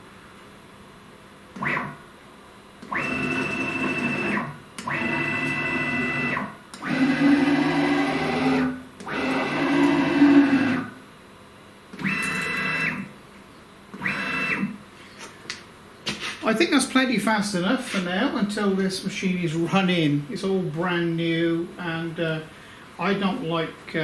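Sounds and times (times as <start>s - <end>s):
stepper motors whining: 2.8s - 11.0s, 12.0s - 13.1s.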